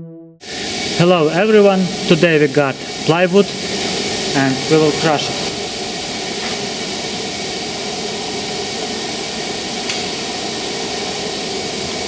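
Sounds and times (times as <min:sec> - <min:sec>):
hydraulic pump hum and hiss: 0:00.4 - 0:12.0.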